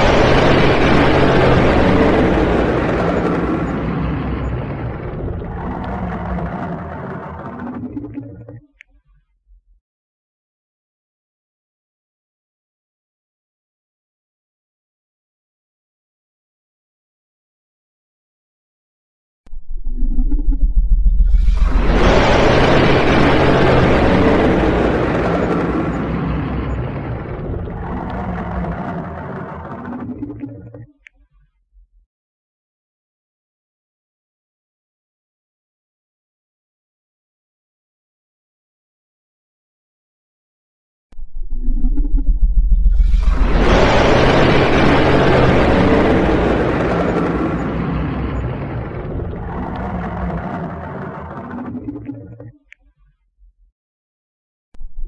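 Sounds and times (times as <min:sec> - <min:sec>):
dragon noisy rush: 0:00.0 - 0:08.5, 0:21.2 - 0:30.9, 0:42.8 - 0:52.2
low hum: 0:00.0 - 0:09.8, 0:19.5 - 0:32.0, 0:41.2 - 0:53.7.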